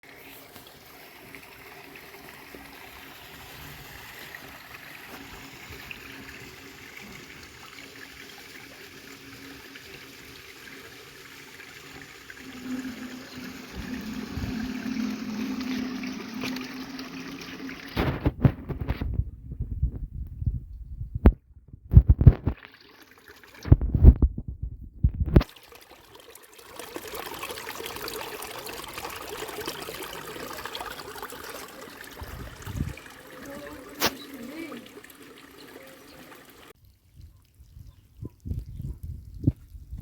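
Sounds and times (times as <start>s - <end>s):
rainwater running and trickling: 0.0s - 18.8s, 22.4s - 24.0s, 25.4s - 40.0s
low hum: 12.4s - 18.6s.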